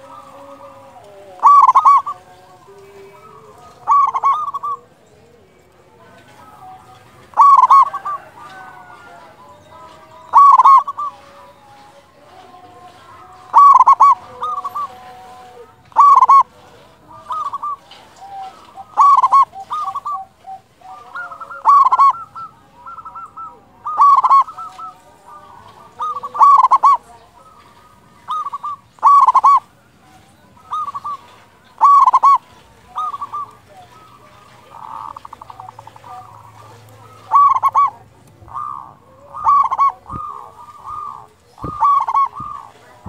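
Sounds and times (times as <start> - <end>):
dove cooing: 0.0 - 43.0.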